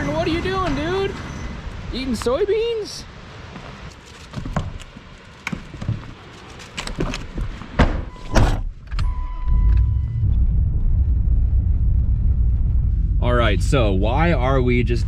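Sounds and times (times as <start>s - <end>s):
truck door clunks and knocks: 7.8s - 8.7s.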